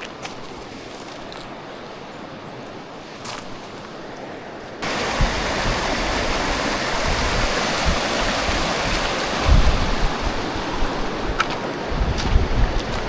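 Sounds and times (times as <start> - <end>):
mountain stream rushing: 0.0 - 13.0
wind bumps on microphone: 4.8 - 13.0.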